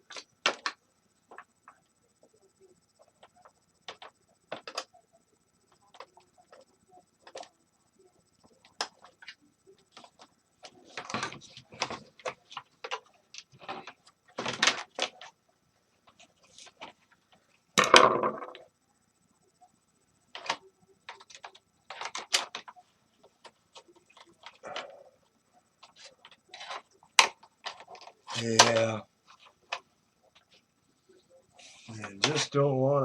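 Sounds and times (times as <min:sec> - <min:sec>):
plastic parts clicking and scraping: 0:00.0 - 0:01.8, 0:03.0 - 0:05.0, 0:08.4 - 0:15.4, 0:20.3 - 0:25.1, 0:25.8 - 0:30.7
plastic clatter: 0:03.2 - 0:05.0, 0:08.4 - 0:15.3, 0:20.3 - 0:25.0, 0:25.8 - 0:30.6.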